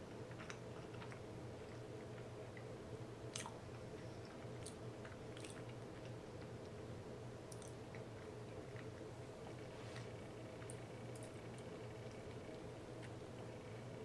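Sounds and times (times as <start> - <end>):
steady low hum: 0.0 - 14.0
wet mouth clicks: 3.3 - 3.6, 4.6 - 5.8, 7.5 - 7.8
person chewing: 3.3 - 6.2, 7.5 - 8.0.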